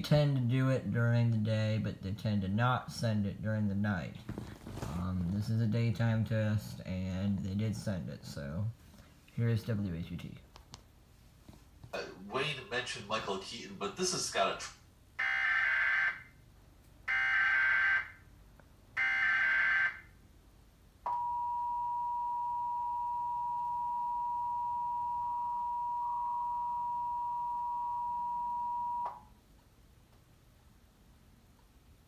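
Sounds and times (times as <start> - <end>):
two-tone attention signal: 21.1 - 29.2.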